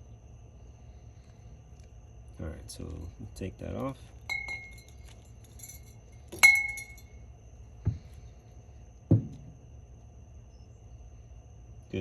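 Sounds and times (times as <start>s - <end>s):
glass bottles clinking: 4.3s - 7.1s
dull thumps: 7.8s - 8.2s, 9.0s - 9.6s.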